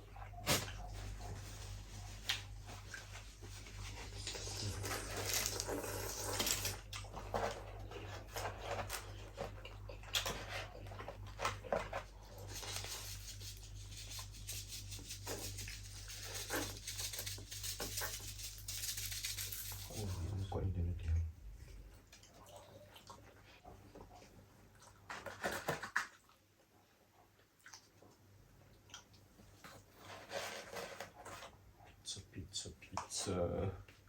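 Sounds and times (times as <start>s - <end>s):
chewing and mouth noises: 21.6s - 25.1s, 27.4s - 29.9s.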